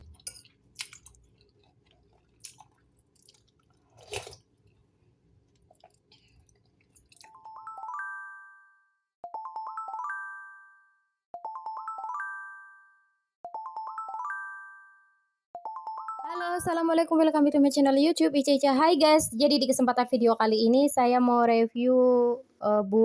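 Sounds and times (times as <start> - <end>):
bright chime tune: 7.4 - 16.5.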